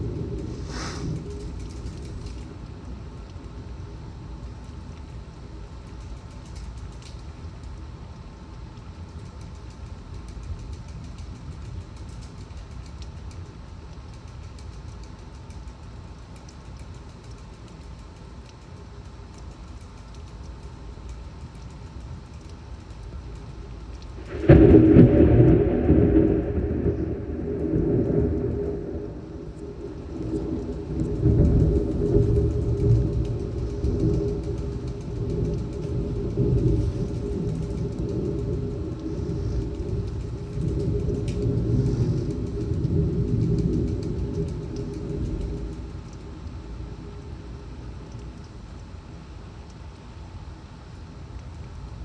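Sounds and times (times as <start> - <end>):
thunder clap rumbling: 0.0 - 4.4, 24.0 - 48.4
torrential rain: 0.0 - 52.0.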